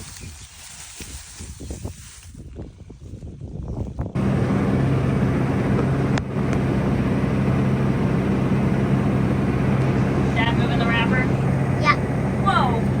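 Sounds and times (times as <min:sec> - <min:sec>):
tractor engine droning: 0:04.2 - 0:13.0.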